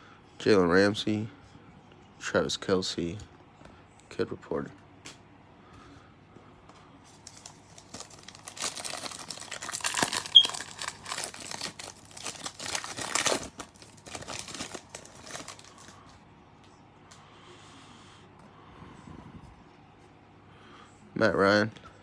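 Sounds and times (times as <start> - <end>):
card pack wrapper tearing and crinkling: 7.1 - 16.0.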